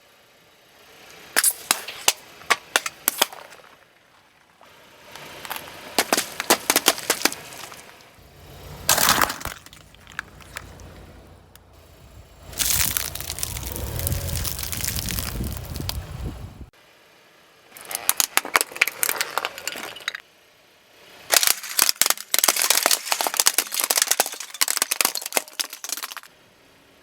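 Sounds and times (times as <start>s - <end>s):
low vehicle rumble: 0.0s - 27.0s
tyres crushing crunchy objects: 1.4s - 11.0s, 12.6s - 16.2s, 17.8s - 20.2s, 21.3s - 26.3s.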